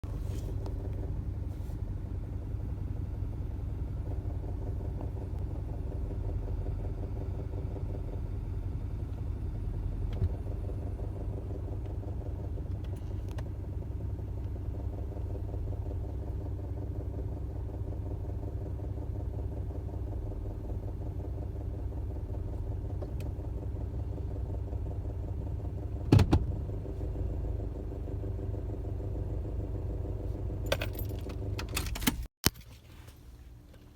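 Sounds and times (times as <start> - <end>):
car engine idling roughly: 0.0 - 26.0.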